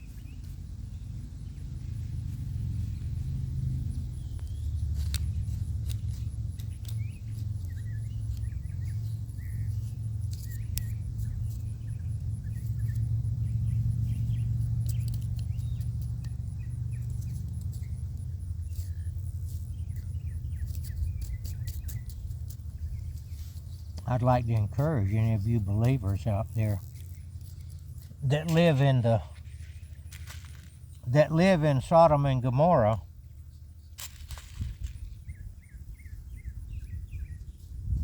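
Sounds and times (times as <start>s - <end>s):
steady low rumble: 0.0s - 38.0s
knife scratching through soil: 5.0s - 13.1s, 18.6s - 30.8s.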